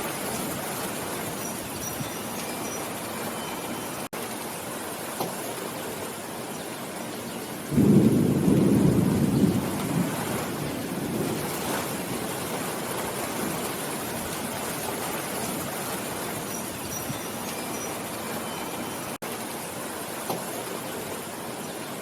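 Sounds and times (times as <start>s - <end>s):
steady rain: 0.0s - 22.0s
thunder clap: 7.7s - 14.4s.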